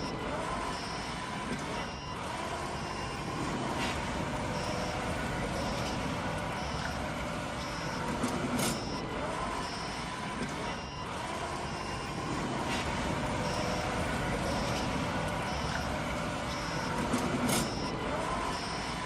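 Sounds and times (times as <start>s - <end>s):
short high-pitched beeps: 4.4s - 10.0s, 13.2s - 18.9s.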